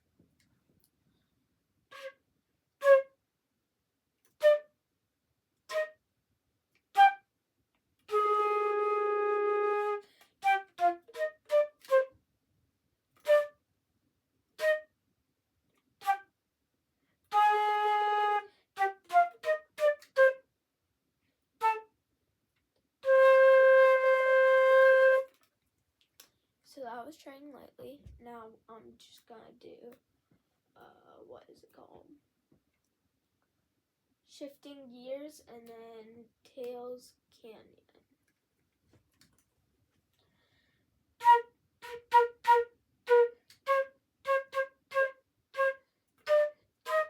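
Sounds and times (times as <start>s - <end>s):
solo flute playing slow tune: 1.9s - 2.2s, 2.8s - 3.1s, 4.4s - 4.7s, 5.7s - 6.0s, 7.0s - 7.2s, 8.1s - 12.1s, 13.2s - 13.6s, 14.6s - 14.9s, 16.0s - 16.2s, 17.3s - 20.4s, 21.6s - 21.9s, 23.0s - 25.4s, 41.2s - 47.0s.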